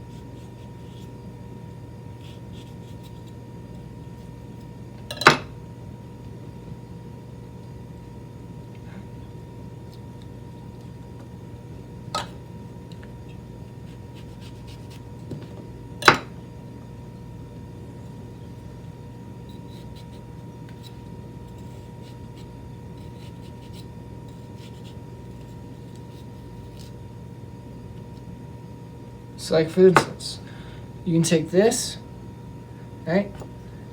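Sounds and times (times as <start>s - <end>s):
steady low hum: 0.0s - 33.9s
knife cutting through vegetable: 13.9s - 15.1s, 19.5s - 27.0s.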